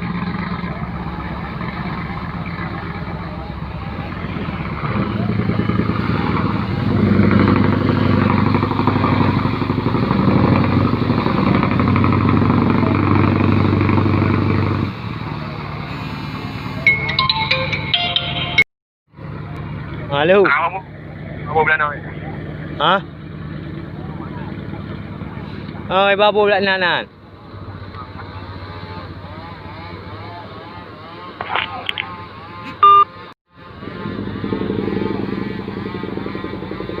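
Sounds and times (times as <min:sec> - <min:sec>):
diesel boat engine running: 0:00.0 - 0:17.4, 0:19.1 - 0:37.0
short loud beep: 0:32.8 - 0:33.1.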